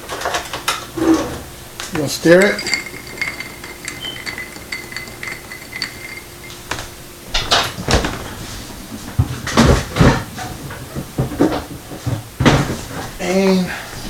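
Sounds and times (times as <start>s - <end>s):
spoon clinking ice in glass: 2.0s - 6.9s
objects knocked and set down: 2.0s - 8.3s.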